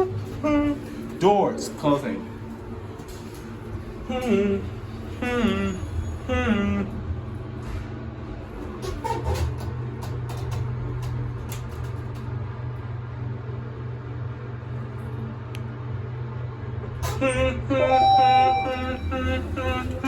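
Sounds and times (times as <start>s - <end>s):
elevator low hum: 0.0s - 20.0s
brief held tone: 17.2s - 19.4s.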